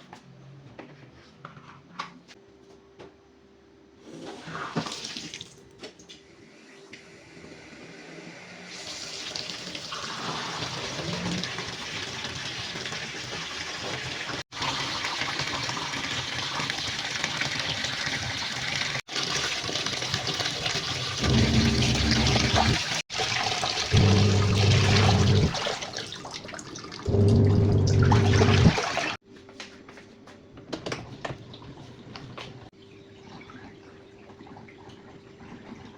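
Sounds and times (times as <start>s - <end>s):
water running and splashing: 11.2s - 29.2s
electric motor humming: 21.2s - 22.8s, 24.0s - 25.5s, 27.1s - 28.7s.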